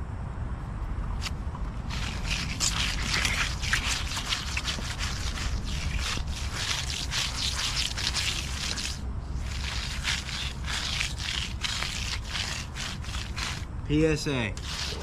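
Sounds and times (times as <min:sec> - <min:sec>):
tool scraping wet concrete: 0:01.9 - 0:15.0.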